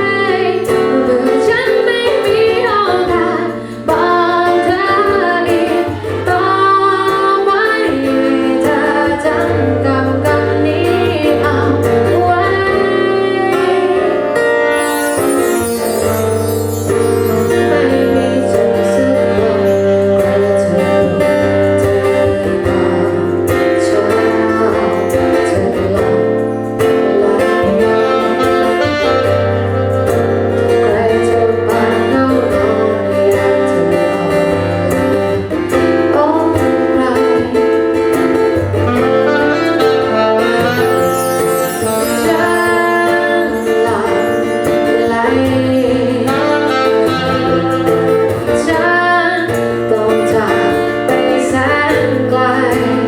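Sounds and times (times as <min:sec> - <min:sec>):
live band music: 0:00.0 - 0:53.0.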